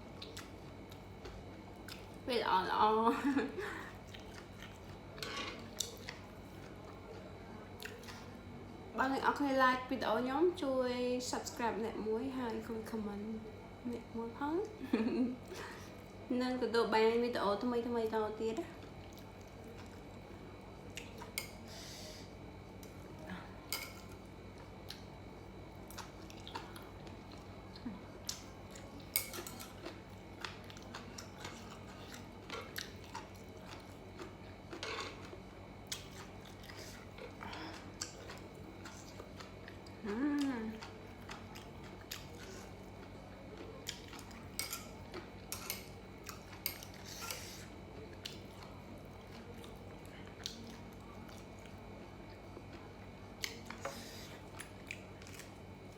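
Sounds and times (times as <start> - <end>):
chewing: 0.2 - 2.2, 4.0 - 8.3, 18.8 - 21.7, 25.8 - 55.9
utensils clinking against dishes: 44.1 - 46.0.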